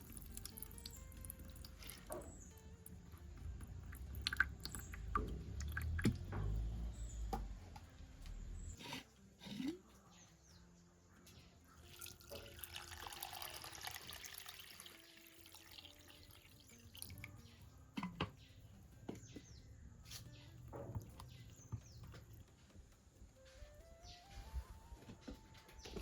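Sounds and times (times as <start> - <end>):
water running and splashing: 11.9 - 17.3.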